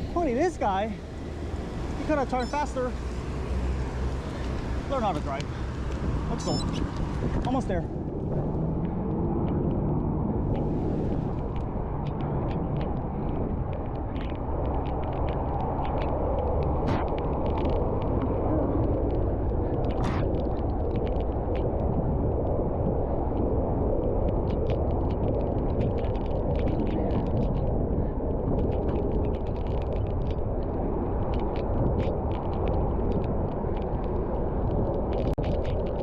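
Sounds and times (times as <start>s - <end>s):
bicycle tyres on wet road: 0.0s - 36.0s
wind rush on microphone: 0.0s - 36.0s
small ticks: 10.5s - 22.6s, 28.6s - 36.0s.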